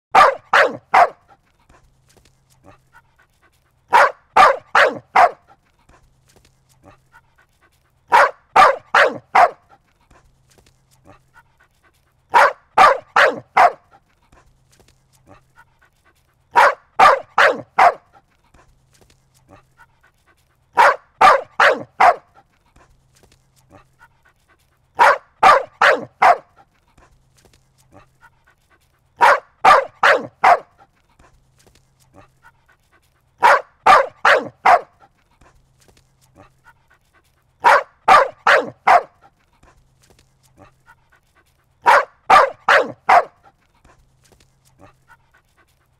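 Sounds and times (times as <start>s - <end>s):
dog barking: 0.1s - 1.4s, 3.9s - 5.6s, 8.1s - 9.8s, 12.3s - 14.0s, 16.5s - 18.2s, 20.8s - 22.5s, 25.0s - 26.7s, 29.2s - 30.9s, 33.4s - 35.1s, 37.6s - 39.4s, 41.8s - 43.6s.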